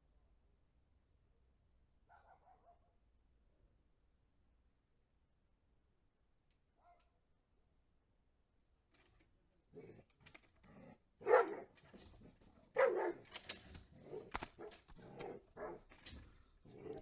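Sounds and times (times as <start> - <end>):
puppy barking: 2.1 - 2.9, 6.8 - 7.1, 11.2 - 11.8, 12.7 - 13.3, 14.0 - 15.9.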